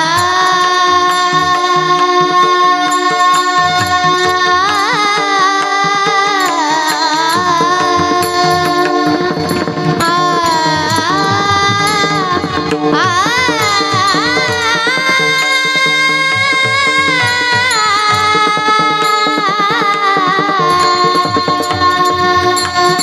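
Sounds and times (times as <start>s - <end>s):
girl singing ornamented notes: 0.0s - 23.0s
tabla: 0.0s - 23.0s.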